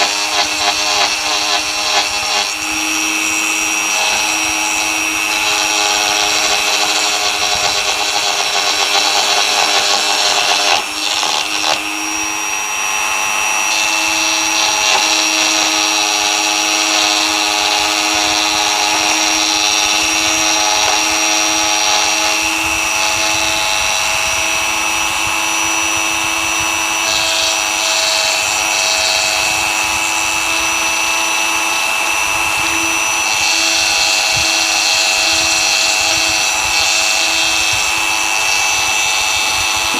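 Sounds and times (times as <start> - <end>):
hiss of cutting: 0.0 - 13.1
rotary tool motor whine: 0.0 - 39.9.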